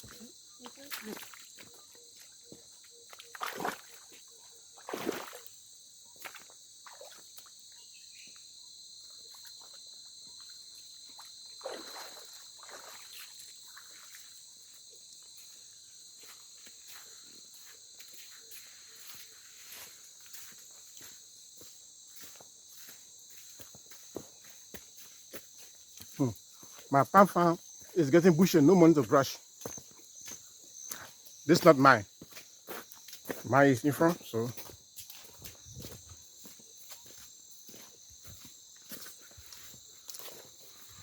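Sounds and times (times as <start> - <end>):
insects chirping: 0.0 - 41.0
brushing scuffs of footsteps: 16.2 - 26.7, 29.6 - 41.0.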